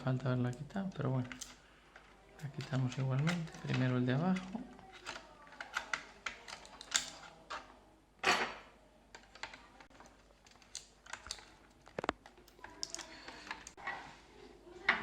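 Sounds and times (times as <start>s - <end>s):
plastic and metal clicks: 1.3s - 7.6s.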